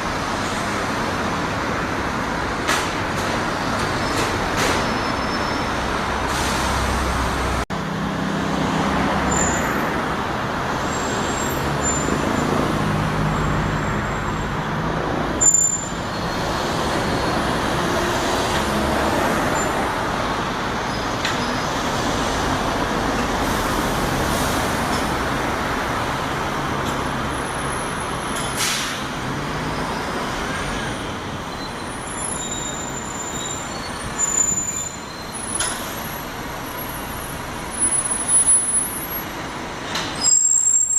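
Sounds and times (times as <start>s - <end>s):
bus engines idling: 0.0s - 40.9s
road traffic: 0.0s - 40.9s
air brake hiss: 6.3s - 6.9s, 28.6s - 29.1s.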